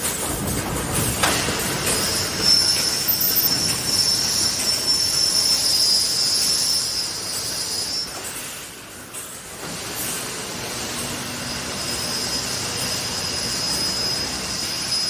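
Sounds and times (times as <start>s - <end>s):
high-pitched machine whine: 0.2s - 8.8s, 9.6s - 15.0s.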